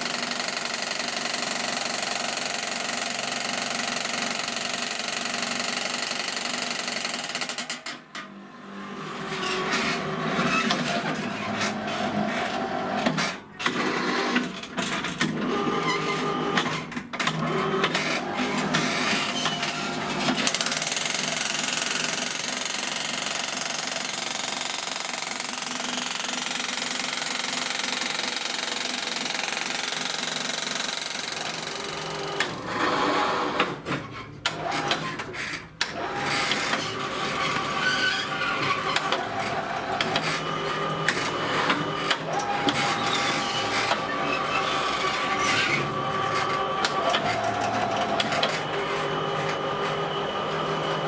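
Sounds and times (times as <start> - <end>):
electric jackhammer chattering: 0.0 - 7.9, 17.3 - 33.6.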